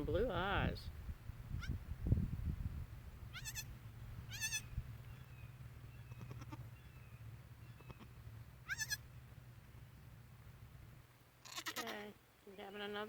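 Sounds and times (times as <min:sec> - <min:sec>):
steady low hum: 0:00.8 - 0:11.4
goat kid bleating: 0:03.3 - 0:03.7, 0:04.3 - 0:04.8, 0:05.9 - 0:06.8, 0:07.7 - 0:09.0, 0:11.4 - 0:12.2.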